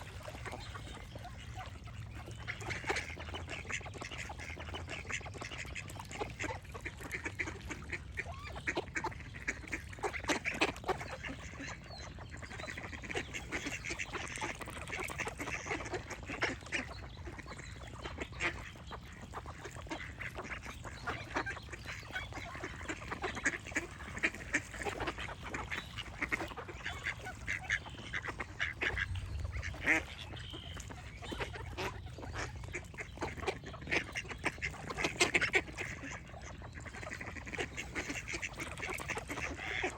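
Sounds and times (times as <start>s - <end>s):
ducks quacking: 0.0s - 39.9s.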